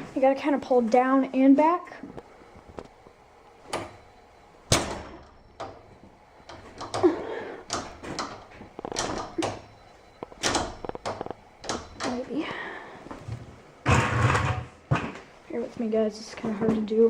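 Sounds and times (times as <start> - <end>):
garage door opener clacks and knocks: 4.7 - 9.8, 10.4 - 12.3, 13.8 - 15.2.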